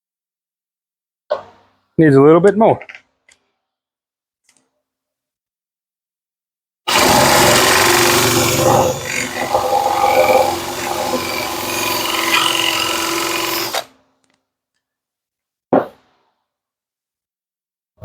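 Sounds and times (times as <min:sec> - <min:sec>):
power drill boring into wood: 0:06.9 - 0:13.9.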